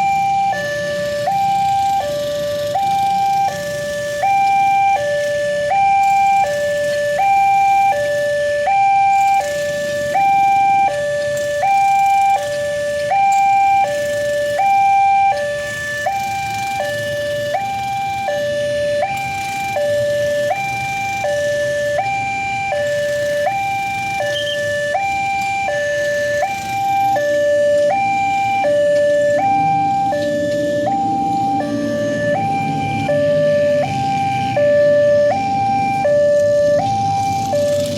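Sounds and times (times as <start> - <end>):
two-tone level crossing alarm: 0.0 - 37.9.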